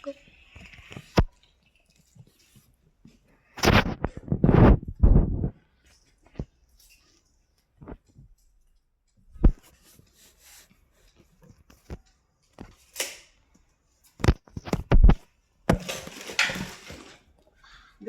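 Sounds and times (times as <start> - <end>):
rustle or scrape: 15.8 - 17.3.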